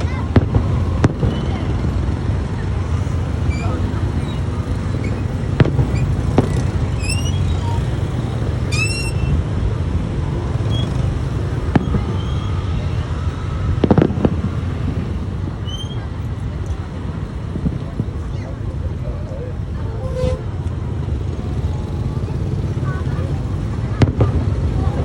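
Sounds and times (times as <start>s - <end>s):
firework pops: 0.0s - 2.1s, 5.0s - 7.2s, 13.8s - 14.7s
firework bangs: 0.0s - 7.8s, 11.4s - 12.6s, 13.7s - 16.2s, 22.8s - 25.0s
rising firework whistles: 3.4s - 8.0s, 8.6s - 9.5s, 11.7s - 16.2s.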